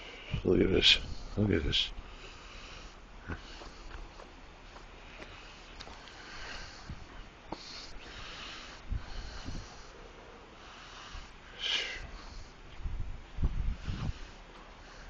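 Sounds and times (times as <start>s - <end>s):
person breathing hard: 2.0s - 4.2s, 5.0s - 12.6s.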